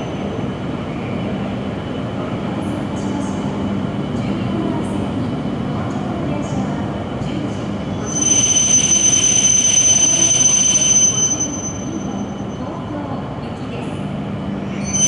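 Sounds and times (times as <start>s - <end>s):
train rumbling at platform: 0.0s - 15.0s
high-pitched squeal: 14.7s - 15.0s.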